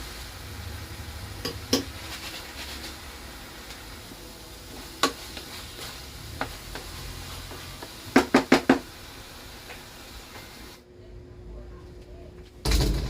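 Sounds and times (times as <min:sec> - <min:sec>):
faint sizzle: 0:00.0 - 0:12.3
utensil knocking on cookware: 0:07.8 - 0:08.9.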